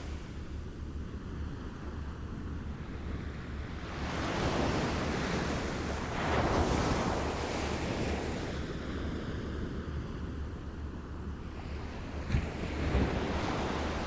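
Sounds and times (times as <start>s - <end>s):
wind rumble on microphone: 0.0s - 14.0s
small waves lapping on shore: 1.4s - 10.2s.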